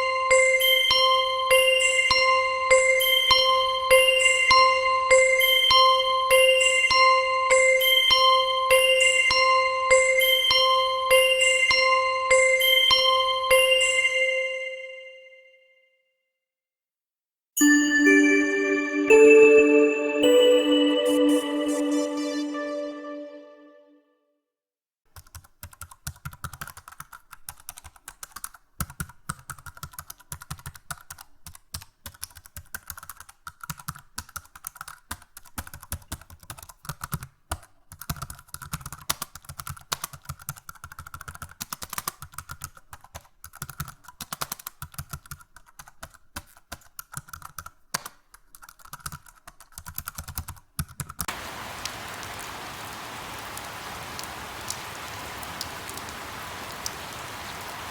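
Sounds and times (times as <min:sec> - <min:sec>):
steady hiss: 0:51.3 - 0:57.9.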